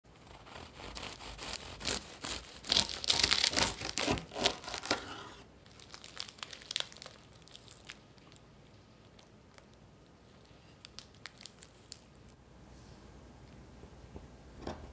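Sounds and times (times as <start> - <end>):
dry crinkling and crackling: 0.5 - 5.0, 5.6 - 12.4.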